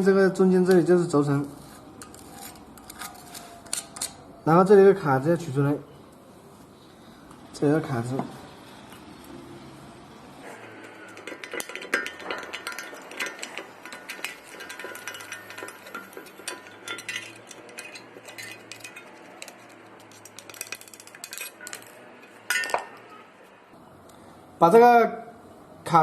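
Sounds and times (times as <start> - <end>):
metal tool tapping and scraping steel: 10.4 - 23.2
ringing metal clink: 10.7 - 23.2.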